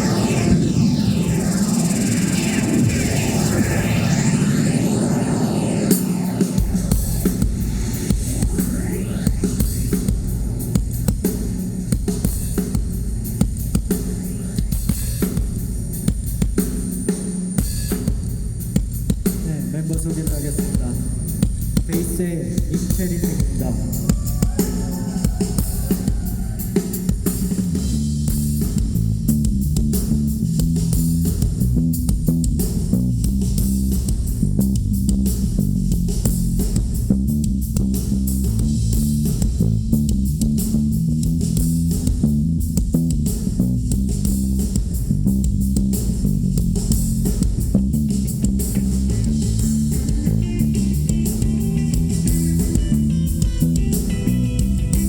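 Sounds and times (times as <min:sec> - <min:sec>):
drum beat: 0:06.6 - 0:27.8, 0:39.0 - 0:55.0
bass guitar solo: 0:49.1 - 0:55.0.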